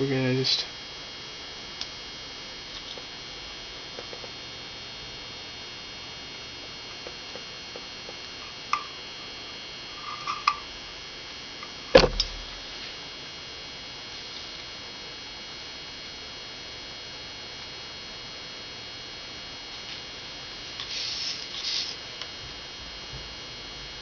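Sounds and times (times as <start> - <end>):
electrical hum: 0.0 - 24.0
faint high whine: 0.0 - 24.0
sharp knock: 12.0 - 12.4.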